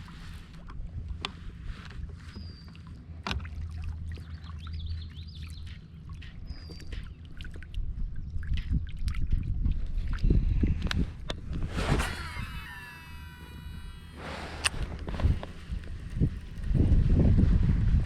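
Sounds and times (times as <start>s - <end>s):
bird warbling: 11.9s - 14.7s.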